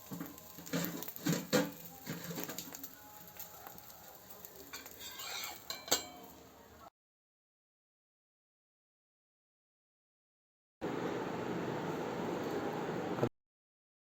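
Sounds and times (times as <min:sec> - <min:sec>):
utensil scraping on griddle: 0:00.0 - 0:06.4
faint sizzling: 0:00.0 - 0:06.9.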